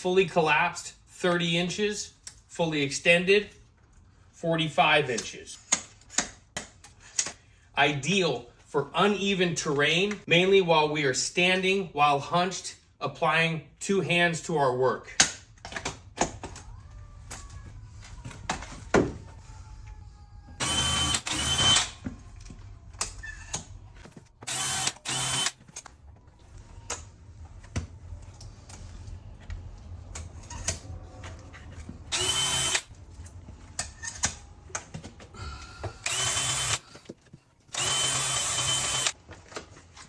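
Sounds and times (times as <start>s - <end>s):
power drill running: 20.6s - 22.0s, 24.4s - 25.7s, 32.1s - 32.9s, 36.0s - 37.1s, 37.7s - 39.2s.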